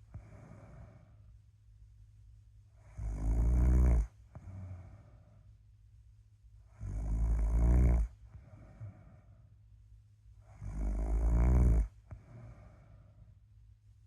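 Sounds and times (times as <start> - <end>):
quiet breathing: 0.0 - 14.0
person snoring loudly: 2.8 - 5.0, 6.8 - 9.0, 10.5 - 12.8.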